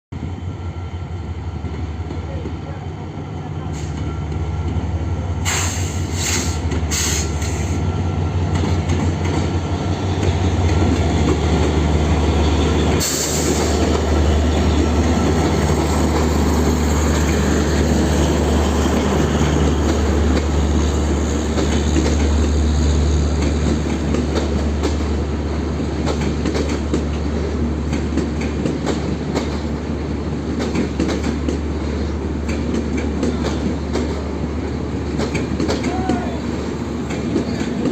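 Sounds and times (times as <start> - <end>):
locomotive engine drone: 0.2 - 28.6
train wheels clattering on rails: 3.7 - 37.9.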